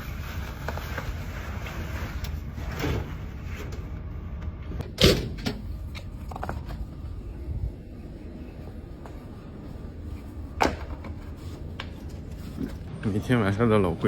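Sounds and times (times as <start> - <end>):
steady low rumble: 3.9 - 14.0.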